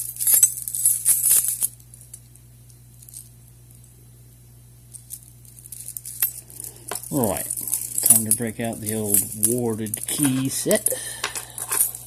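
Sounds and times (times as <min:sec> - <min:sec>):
keys clinking on a ring: 0:00.0 - 0:02.3, 0:04.9 - 0:12.0
steady low hum: 0:00.0 - 0:12.0.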